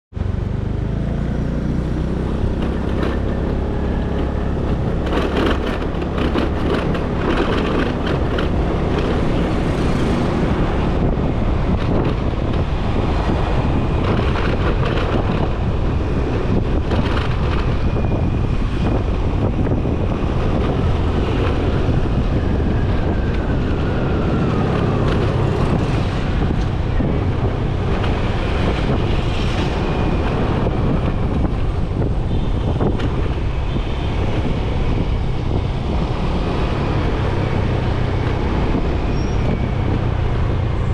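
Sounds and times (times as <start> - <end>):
motorcycle engine running: 0.2 - 11.2
wind buffeting microphone: 0.2 - 40.9.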